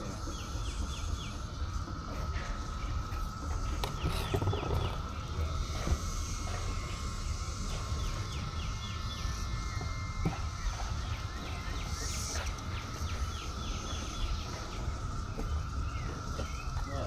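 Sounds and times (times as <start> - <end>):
bird chirping: 0.0 - 17.0
cicada drone: 0.0 - 17.0
low rumble on microphone: 0.0 - 17.0.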